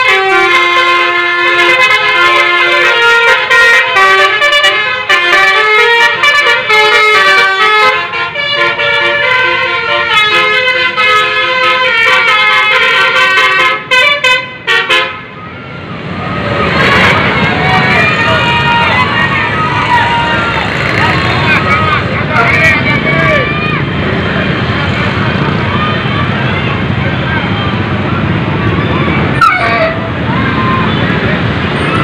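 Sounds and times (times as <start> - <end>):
bus horn melody: 0.0 - 15.4, 16.8 - 17.6, 29.4 - 30.2.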